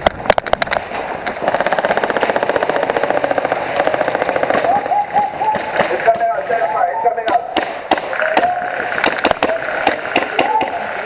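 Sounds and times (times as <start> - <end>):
airsoft gun full-auto burst: 1.4 - 4.9.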